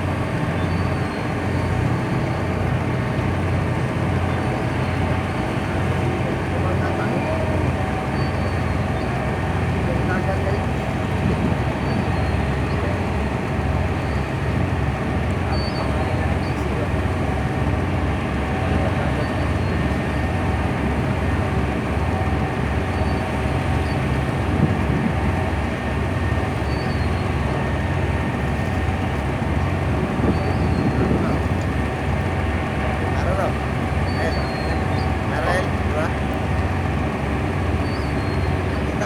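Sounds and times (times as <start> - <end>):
tugboat diesel engine droning: 0.0 - 39.0.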